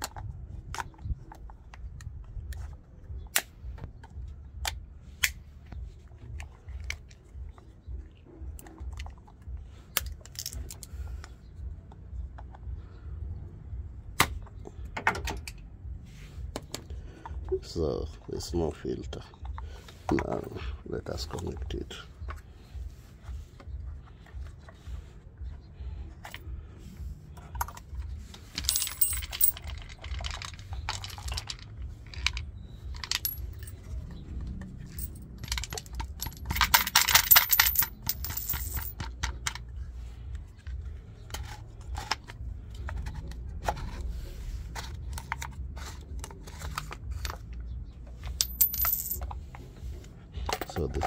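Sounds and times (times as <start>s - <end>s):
plastic parts clicking and rattling: 27.4s - 33.8s, 34.6s - 39.8s, 40.6s - 44.0s, 44.7s - 47.6s, 50.4s - 51.0s
plastic rattling and scraping: 27.4s - 51.0s.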